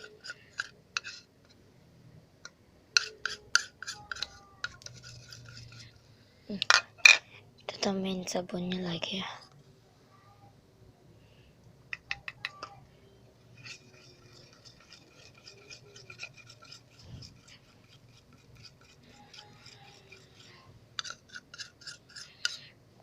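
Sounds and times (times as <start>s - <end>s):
utensil scraping container: 0.0s - 1.3s, 3.0s - 6.0s, 13.5s - 22.7s.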